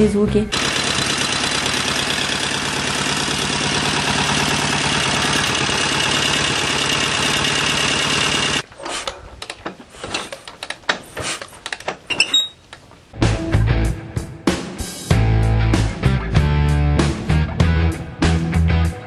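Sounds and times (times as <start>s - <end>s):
scattered clicks and knocks: 9.4s - 12.1s.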